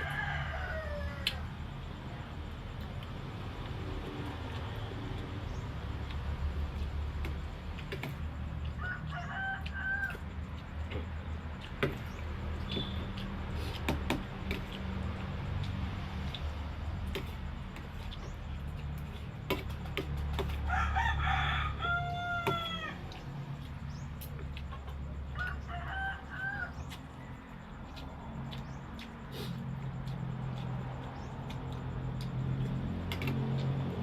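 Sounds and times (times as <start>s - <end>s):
rooster crowing: 0.0s - 1.9s, 8.6s - 10.6s, 20.4s - 24.0s, 24.8s - 28.8s.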